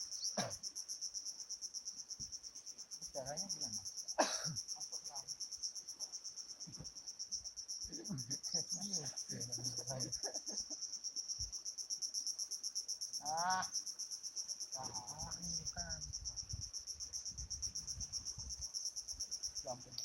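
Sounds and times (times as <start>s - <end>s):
insects trilling: 0.0s - 20.0s
quiet voices talking: 7.9s - 10.8s.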